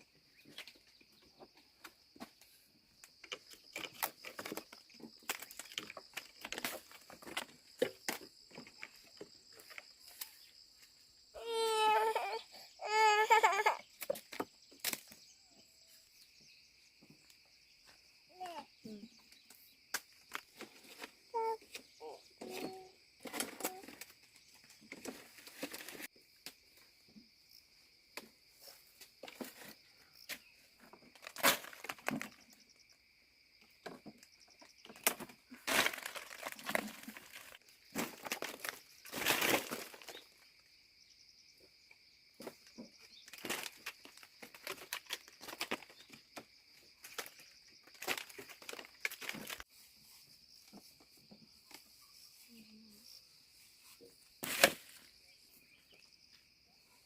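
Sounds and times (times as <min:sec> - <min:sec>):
rustling and crinkling handling: 0:03.3 - 0:10.4, 0:22.4 - 0:26.1, 0:34.9 - 0:40.4, 0:42.4 - 0:52.4.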